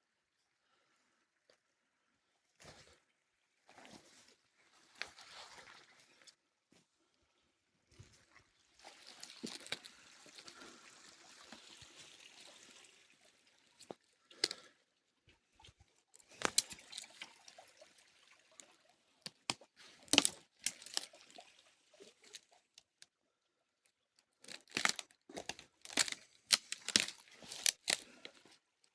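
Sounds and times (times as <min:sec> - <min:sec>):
water trickling: 0:08.6 - 0:14.7, 0:15.5 - 0:23.4
sharp crackles and snaps: 0:19.2 - 0:21.1, 0:24.4 - 0:28.1.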